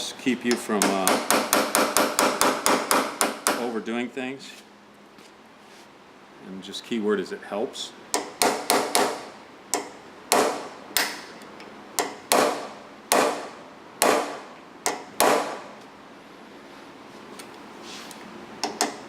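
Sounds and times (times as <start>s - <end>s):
hammer striking steel punch: 0.5s - 3.7s, 8.2s - 11.3s, 12.0s - 15.7s.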